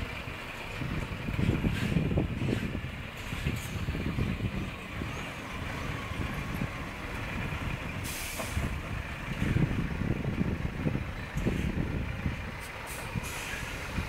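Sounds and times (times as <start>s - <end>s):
truck diesel engine rumbling: 0.0s - 14.0s
compressed air hiss: 8.0s - 8.7s, 12.9s - 13.9s.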